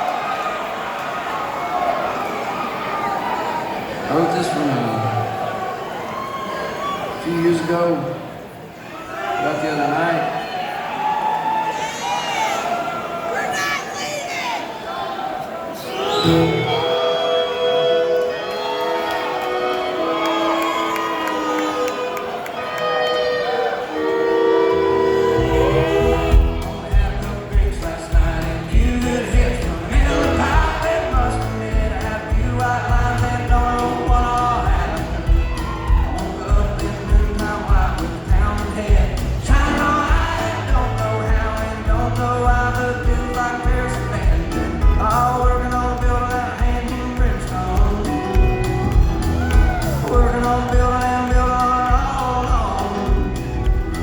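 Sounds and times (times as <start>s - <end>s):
country band playing: 15.9s - 54.0s
sliding melody line: 23.5s - 54.0s
man singing: 25.4s - 54.0s
bass and kick drum: 26.0s - 54.0s.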